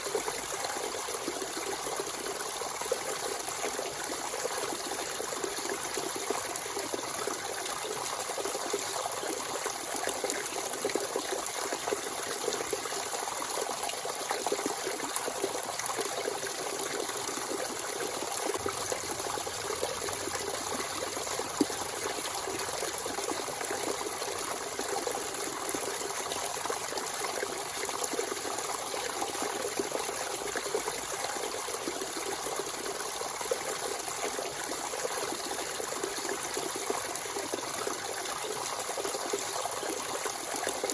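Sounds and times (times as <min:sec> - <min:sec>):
spring water trickling and splashing: 0:00.0 - 0:40.9.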